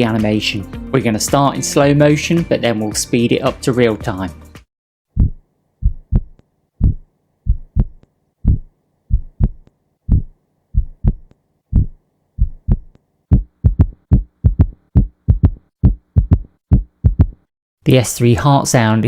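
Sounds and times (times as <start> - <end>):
heartbeat thumps with gallop rhythm: 5.2 - 17.5.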